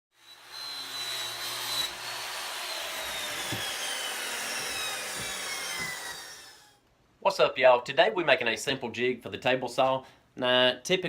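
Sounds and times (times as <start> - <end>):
power tool motor winding down: 0.2 - 6.8.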